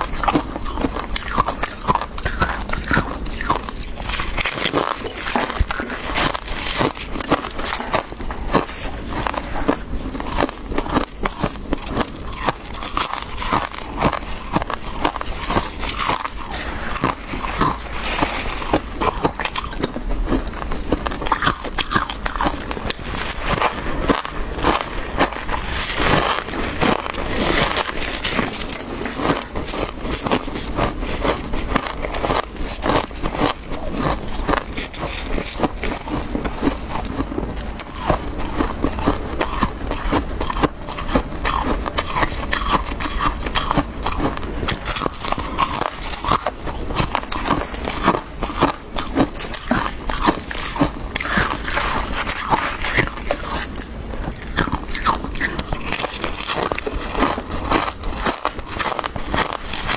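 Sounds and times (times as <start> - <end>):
frost being chewed crunching: 0.0 - 59.9.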